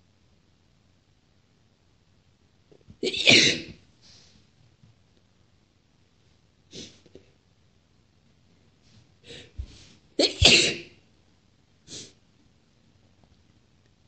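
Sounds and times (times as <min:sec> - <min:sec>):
woman sneezing: 0:03.0 - 0:03.8, 0:10.2 - 0:10.9.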